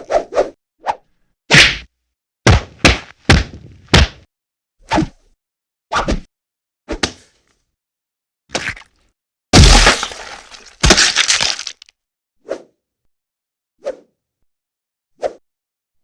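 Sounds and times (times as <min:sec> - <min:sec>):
punch and kick hits: 0:01.5 - 0:01.9, 0:02.5 - 0:04.3, 0:09.6 - 0:11.5.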